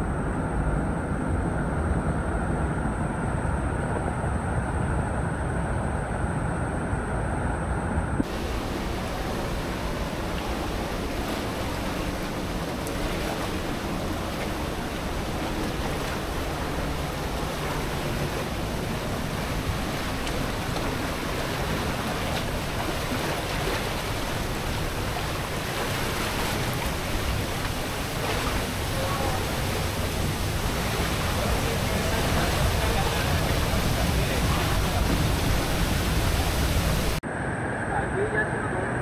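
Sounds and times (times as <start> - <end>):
rushing river water: 8.2 - 37.2.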